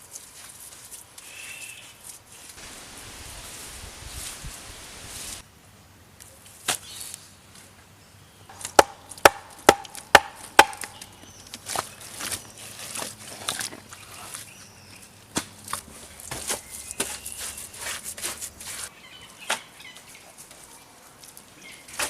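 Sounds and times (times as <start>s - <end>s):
tool striking wood: 8.5s - 11.0s.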